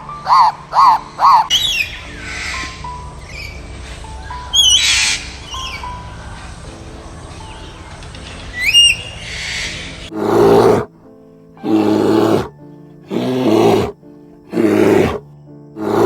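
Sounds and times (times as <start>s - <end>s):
background music: 0.0s - 16.0s
animal calling loudly: 0.2s - 1.5s, 10.1s - 10.9s, 11.6s - 12.5s, 13.1s - 15.2s, 15.8s - 16.0s.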